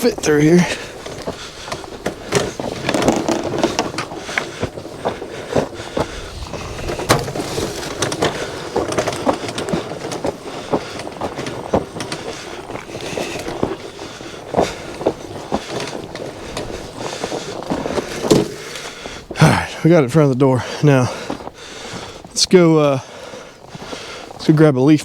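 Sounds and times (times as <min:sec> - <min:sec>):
knocks and clatters: 0:00.0 - 0:19.2
scraping and crunching: 0:00.0 - 0:22.4
go-kart dragged over snow: 0:00.0 - 0:25.0.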